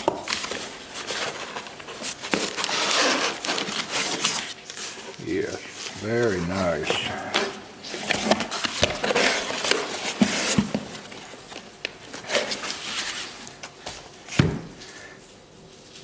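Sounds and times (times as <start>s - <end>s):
rustling: 0.3s - 16.0s.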